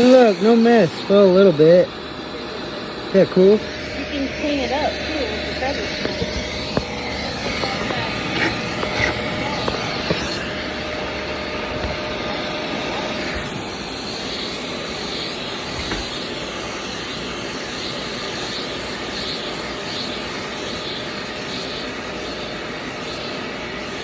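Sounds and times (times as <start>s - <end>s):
vacuum suction drone: 0.0s - 24.0s.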